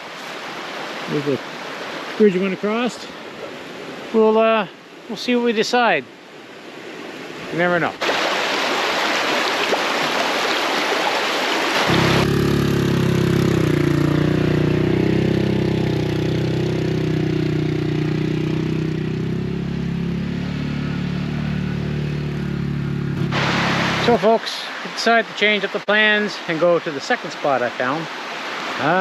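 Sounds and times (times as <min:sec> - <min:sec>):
rushing creek water: 0:00.0 - 0:29.0
atv engine running: 0:11.8 - 0:24.2.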